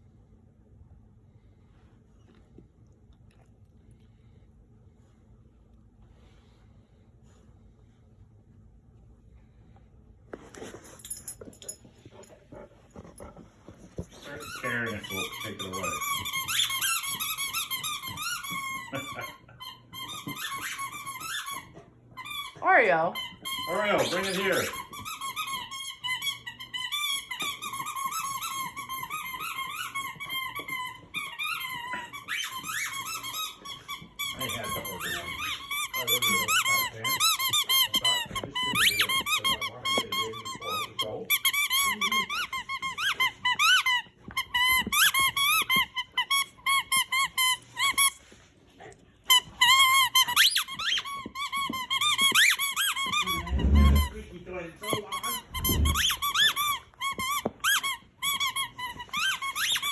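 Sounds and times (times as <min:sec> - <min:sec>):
dog chewing: 0:10.4 - 0:19.0, 0:48.8 - 0:59.9
rubber squeaky toy squeaking: 0:14.2 - 0:22.6, 0:23.2 - 0:48.2, 0:49.3 - 0:54.2, 0:54.9 - 0:59.9.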